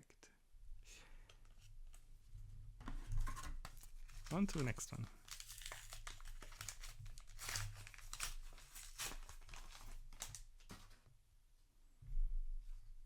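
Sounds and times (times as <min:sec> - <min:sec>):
wrapper tearing and crinkling: 0:03.8 - 0:10.7.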